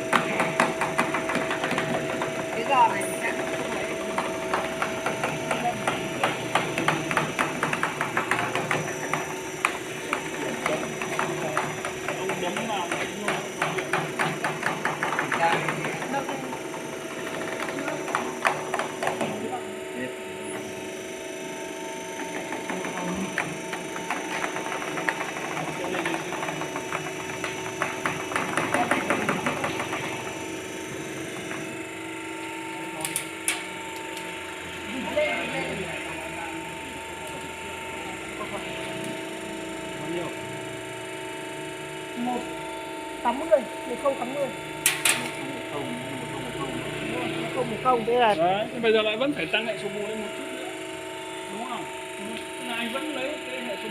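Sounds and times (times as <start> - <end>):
bending machine hum: 0.0 - 53.9
sharp clicks and knocks: 44.8 - 45.4.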